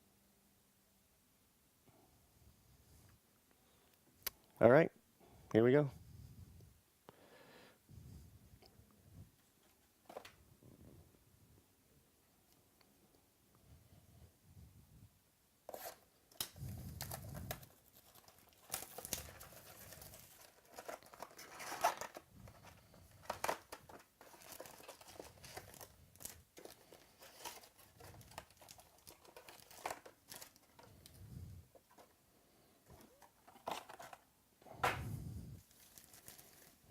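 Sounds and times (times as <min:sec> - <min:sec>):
plastic wrapping crinkling and tearing: 0:15.7 - 0:31.2, 0:35.6 - 0:36.9.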